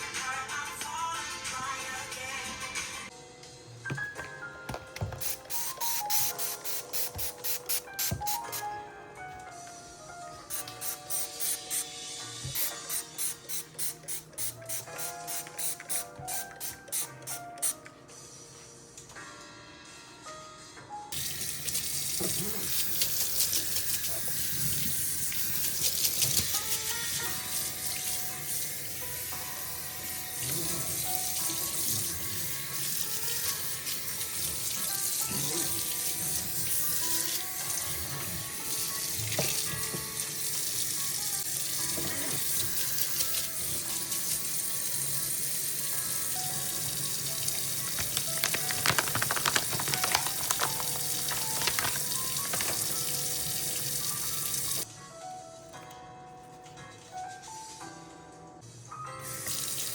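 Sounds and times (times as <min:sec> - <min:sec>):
soft background music: 0:00.0 - 0:59.9
water running from tap: 0:05.0 - 0:08.6, 0:21.1 - 0:54.8, 0:59.2 - 0:59.9.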